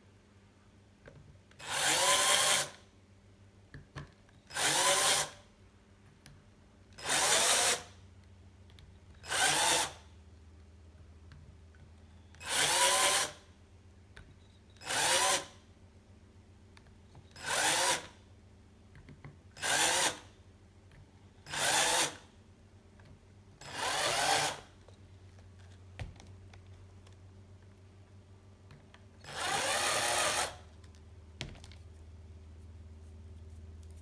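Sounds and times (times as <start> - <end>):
electric drill drilling into metal: 4.5 - 5.4, 7.0 - 7.9, 9.2 - 10.0, 12.4 - 13.4, 19.6 - 20.2, 21.5 - 22.2, 23.6 - 24.7, 29.3 - 30.6.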